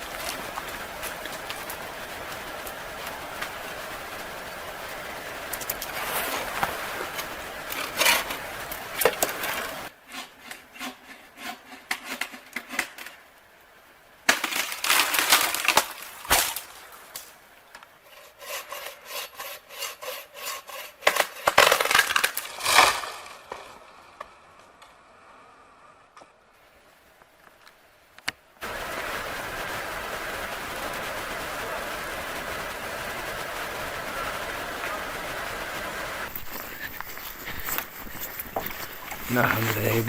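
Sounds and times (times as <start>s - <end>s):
wood cracking: 5.5s - 10.9s, 14.3s - 18.0s, 20.6s - 24.8s, 36.3s - 40.0s
scraping wood: 5.6s - 13.2s, 18.0s - 23.9s, 36.3s - 40.0s.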